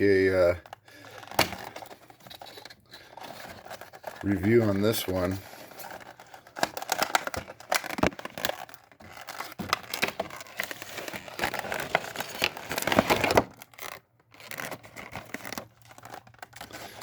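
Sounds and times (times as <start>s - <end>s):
packaging scraping: 0.0s - 17.0s
plastic packaging crinkling: 0.0s - 17.0s.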